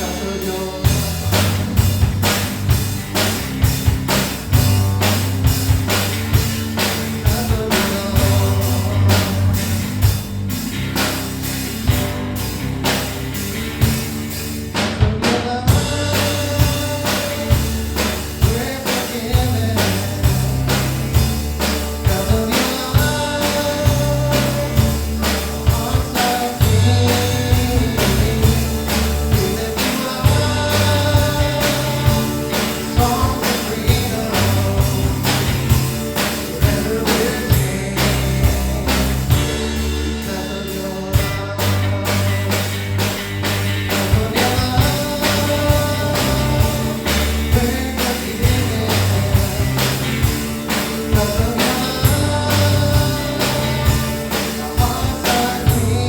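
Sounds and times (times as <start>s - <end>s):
person singing: 0.0s - 1.7s, 7.2s - 10.2s, 15.1s - 21.2s, 22.0s - 42.7s, 43.9s - 56.0s
band playing rock worship song: 0.0s - 56.0s
drum kit beat: 0.0s - 56.0s.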